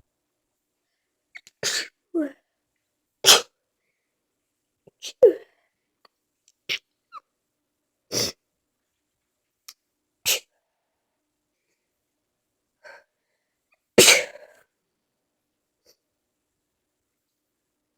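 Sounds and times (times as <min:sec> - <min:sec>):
person sneezing: 0:01.6 - 0:02.0, 0:03.2 - 0:03.6, 0:10.3 - 0:10.5, 0:14.0 - 0:14.6.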